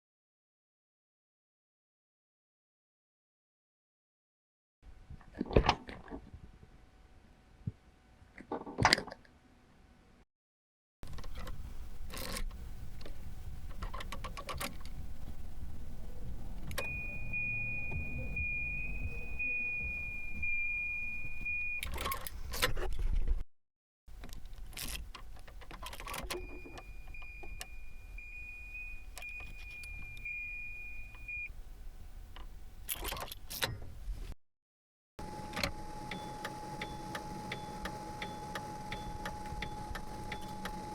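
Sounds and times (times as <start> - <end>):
high warning tone: 15.7 - 22.0, 26.3 - 31.5, 35.2 - 40.9
car keys jangling and clicking: 29.2 - 30.3.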